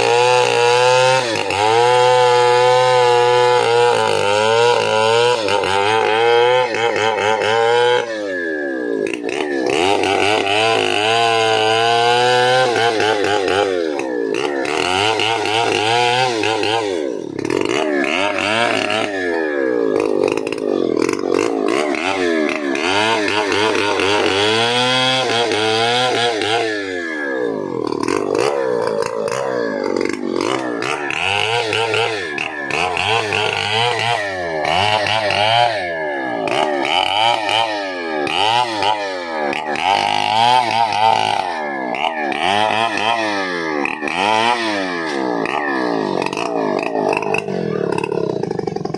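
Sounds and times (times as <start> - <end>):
chainsaw revving: 0.0 - 48.9.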